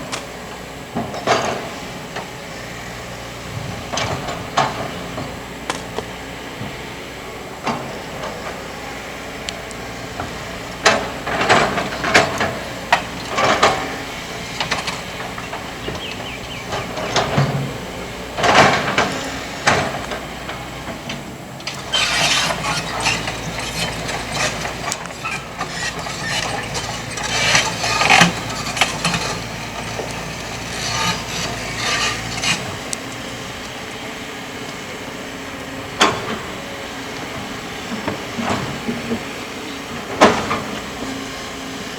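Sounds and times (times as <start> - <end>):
excavator diesel engine: 0.0 - 41.9
stones scraping against steel bucket: 21.7 - 32.9.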